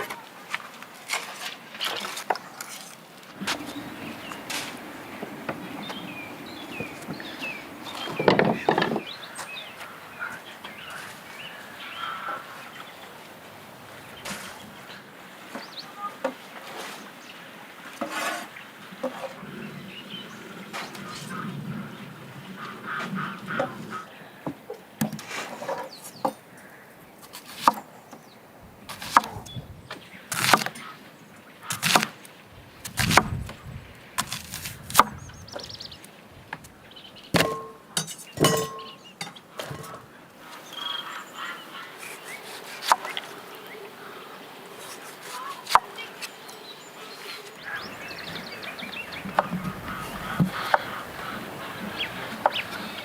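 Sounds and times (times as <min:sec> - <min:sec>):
faint bird chirps: 0:03.4 - 0:16.2, 0:36.8 - 0:53.0.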